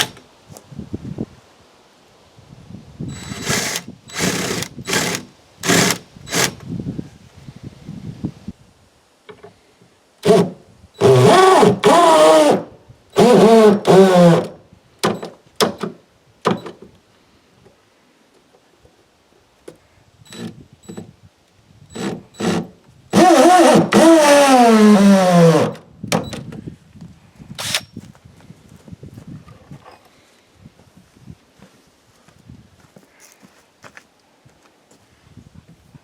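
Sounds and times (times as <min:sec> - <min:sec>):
power drill driving fasteners: 0:00.0 - 0:00.2, 0:03.1 - 0:06.6, 0:10.2 - 0:12.6, 0:13.2 - 0:15.8, 0:20.3 - 0:21.0, 0:21.9 - 0:25.8, 0:27.6 - 0:27.9.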